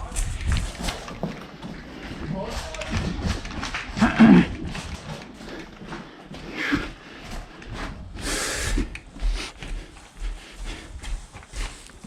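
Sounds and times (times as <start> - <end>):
footsteps scuffing on ground: 0.0 - 3.9.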